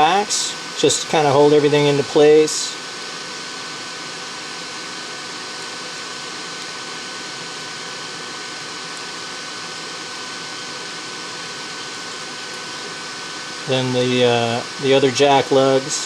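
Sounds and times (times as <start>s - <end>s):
fan-like hiss: 0.0s - 16.0s.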